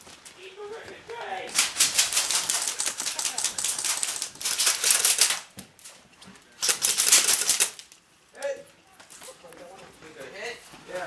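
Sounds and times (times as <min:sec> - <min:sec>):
airsoft guns firing bursts: 0:01.5 - 0:05.4, 0:06.6 - 0:07.8.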